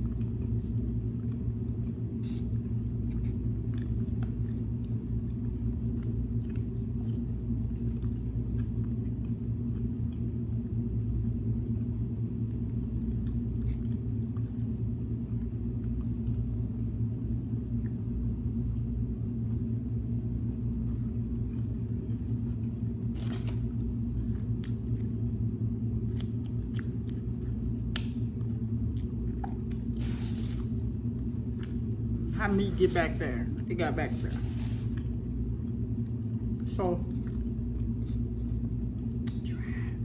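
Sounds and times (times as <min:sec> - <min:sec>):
steady low rumble: 0:00.0 - 0:40.0
person chewing: 0:26.1 - 0:32.4.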